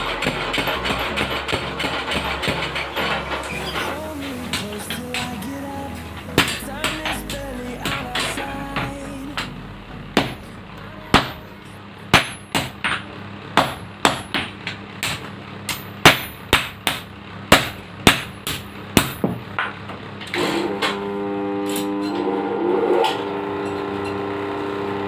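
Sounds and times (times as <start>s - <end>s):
steady hum: 0.0s - 19.4s
hammer striking steel on anvil: 12.1s - 19.4s.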